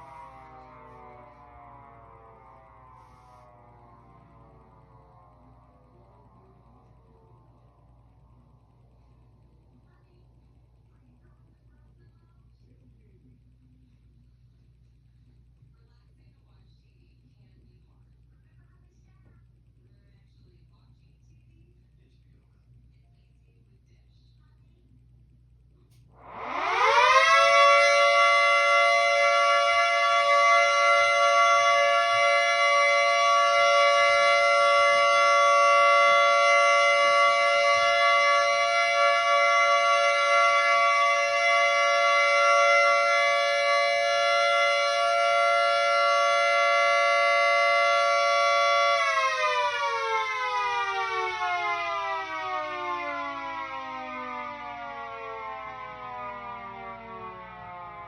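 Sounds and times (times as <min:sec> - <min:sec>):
siren wailing: 0:00.0 - 0:09.8, 0:26.2 - 0:58.0.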